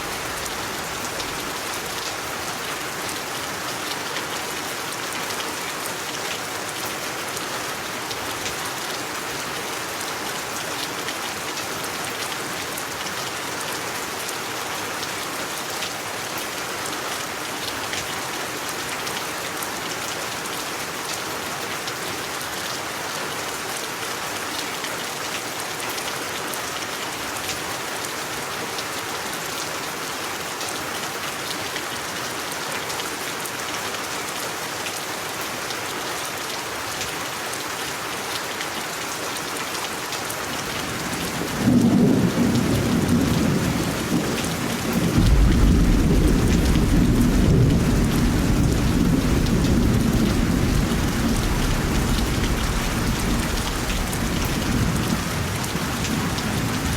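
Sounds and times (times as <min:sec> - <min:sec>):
steady rain falling: 0:00.0 - 0:56.9.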